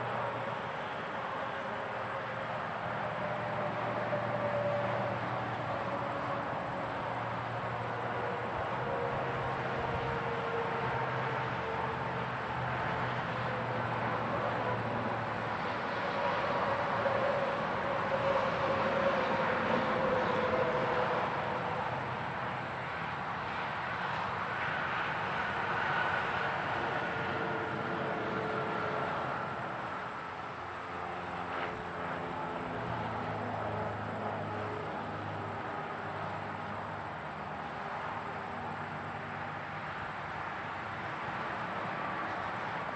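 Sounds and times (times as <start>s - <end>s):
highway traffic noise: 0.0s - 42.9s.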